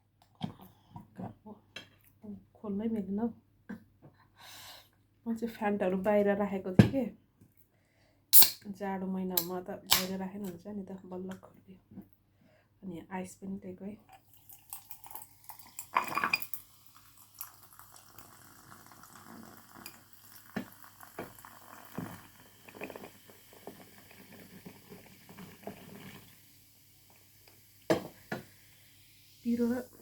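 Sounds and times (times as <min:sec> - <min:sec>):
soda fizzing in a glass: 0:14.2 - 0:30.0
ice clinking on glass: 0:14.4 - 0:18.5.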